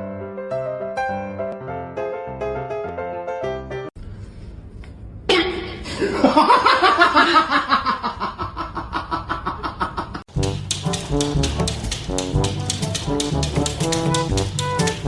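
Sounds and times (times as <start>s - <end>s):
piano music: 0.0s - 3.9s, 10.3s - 15.0s
person laughing hard: 5.9s - 10.2s.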